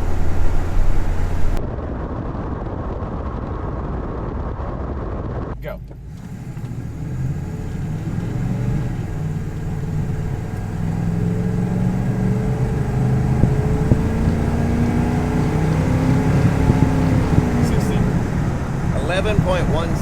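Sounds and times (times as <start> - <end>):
car engine accelerating hard: 0.0 - 1.6, 5.6 - 20.0.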